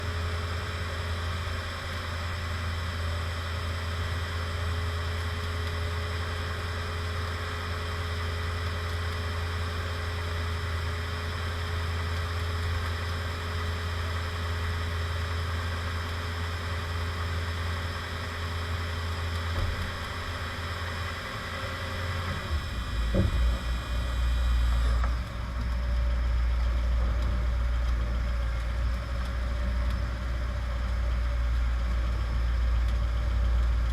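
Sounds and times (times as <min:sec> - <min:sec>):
brief thump: 0:23.1 - 0:23.7.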